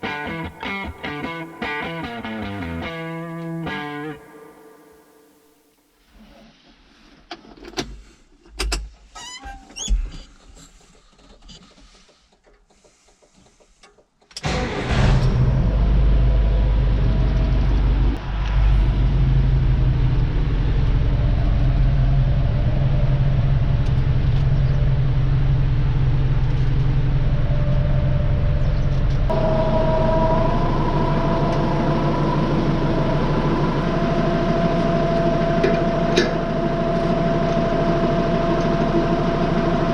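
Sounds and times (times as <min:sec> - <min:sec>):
large engine running with low hum: 0:14.4 - 0:39.9
steady higher tones: 0:29.3 - 0:39.9.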